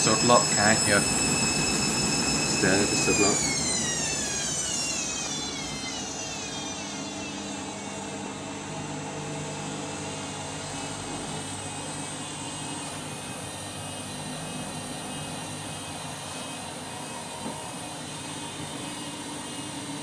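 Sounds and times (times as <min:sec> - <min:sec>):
washing machine motor whine and hum: 0:00.0 - 0:20.0.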